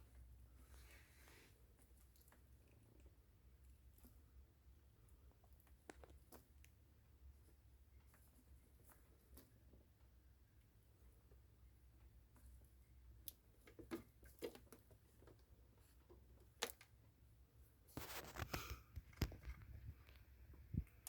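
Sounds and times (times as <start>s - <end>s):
faint clicks and taps: 5.1s - 10.2s
brief rustle: 17.9s - 20.3s.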